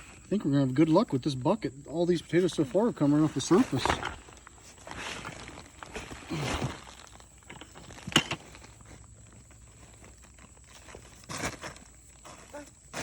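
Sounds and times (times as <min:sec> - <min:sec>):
hands digging through soil: 0:03.0 - 0:13.0.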